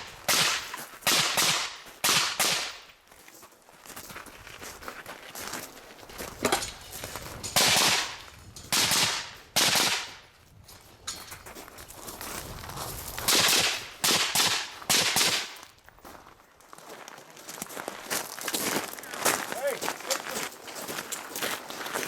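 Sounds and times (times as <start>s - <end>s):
rifle shots echoing: 0.0s - 2.9s, 7.6s - 10.2s, 13.3s - 15.7s.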